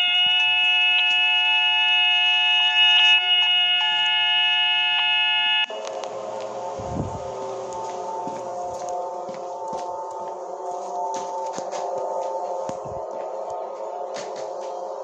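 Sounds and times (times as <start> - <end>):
electronic alarm chord: 0.0 - 9.9
low electronic drone: 5.6 - 15.0.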